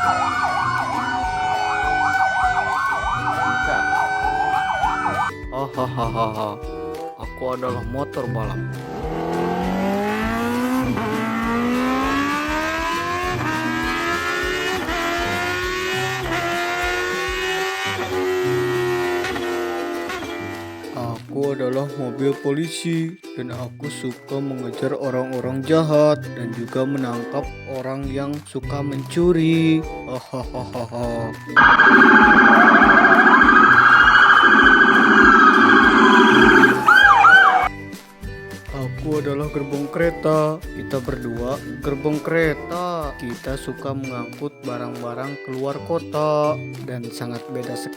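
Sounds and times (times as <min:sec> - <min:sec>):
police siren wailing: 0:00.0 - 0:05.4, 0:09.0 - 0:20.6, 0:31.6 - 0:37.7
racing motorbike engine revving: 0:08.7 - 0:20.9, 0:31.6 - 0:37.7.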